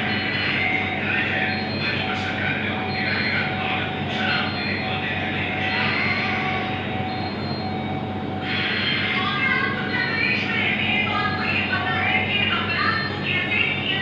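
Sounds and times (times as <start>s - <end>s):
electronic beeps: 0.0s - 9.2s.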